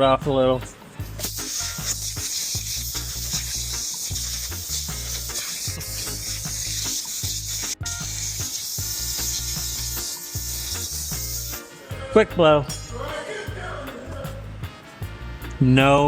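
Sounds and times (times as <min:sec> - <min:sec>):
background music with bass line: 0:00.0 - 0:16.0
compressed air blow gun hissing: 0:00.9 - 0:12.0.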